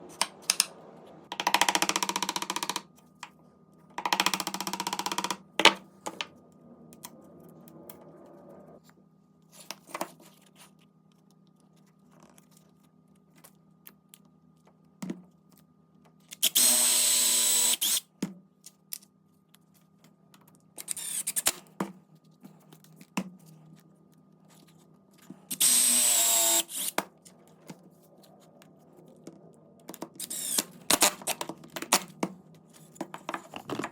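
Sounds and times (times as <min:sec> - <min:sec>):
power drill whining: 0:16.4 - 0:18.0, 0:25.5 - 0:27.0, 0:30.2 - 0:30.7.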